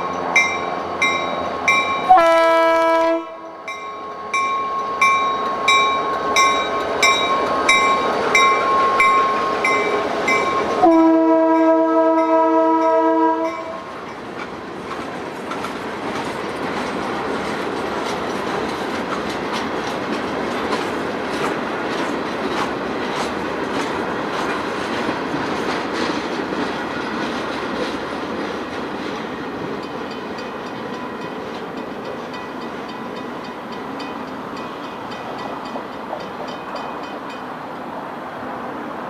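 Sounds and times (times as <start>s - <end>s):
locomotive horn: 2.0s - 3.5s, 10.8s - 13.9s
train wheels clicking over rail joints: 13.8s - 37.6s.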